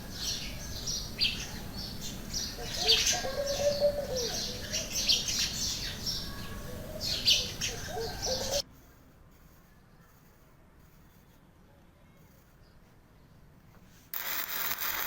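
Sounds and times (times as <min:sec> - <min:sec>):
birds chirping and calling: 0:00.0 - 0:08.6.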